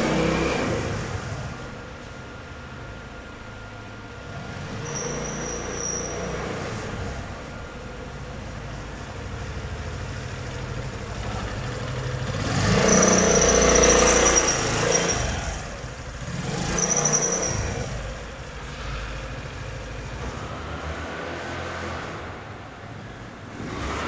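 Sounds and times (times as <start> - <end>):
scooter engine revving: 0.0 - 1.8, 8.1 - 22.6, 23.4 - 24.0
thin high squeal: 4.8 - 6.4, 12.8 - 15.3, 16.7 - 17.9.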